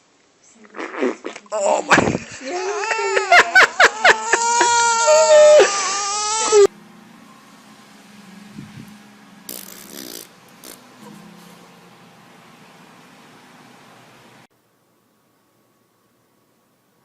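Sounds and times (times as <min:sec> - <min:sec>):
faint room hum: 0:00.0 - 0:17.0
baby crying: 0:02.5 - 0:06.7.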